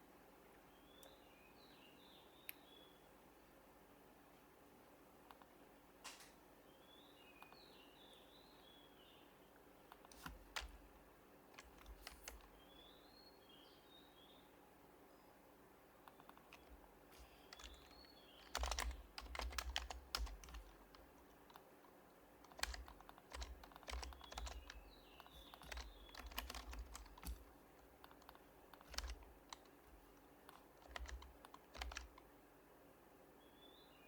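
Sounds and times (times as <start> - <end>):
keyboard typing: 9.9 - 10.8, 11.6 - 12.6, 16.0 - 32.3.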